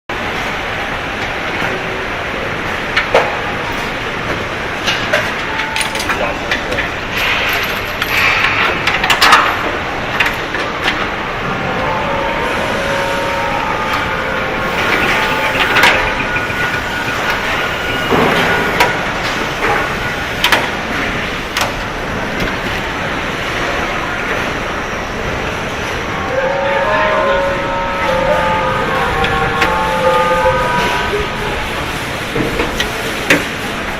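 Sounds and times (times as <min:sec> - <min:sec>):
machinery din: 0:01.2 - 0:26.5, 0:27.2 - 0:33.9
clanks and knocks from tools: 0:03.0 - 0:11.1, 0:14.7 - 0:22.9, 0:32.4 - 0:33.6.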